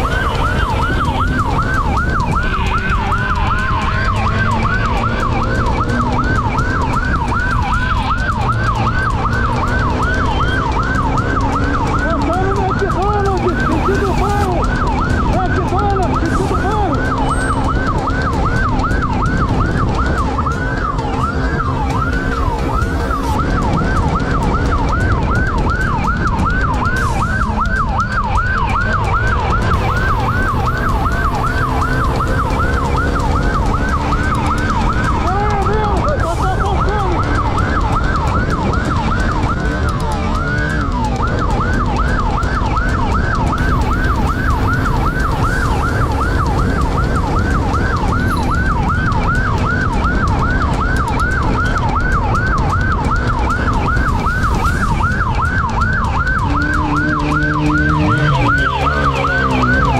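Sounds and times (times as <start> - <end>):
wind noise: 0.0 - 40.2, 40.8 - 58.5
motorcycle engine rumble: 0.0 - 59.9
police siren wailing: 0.0 - 59.9.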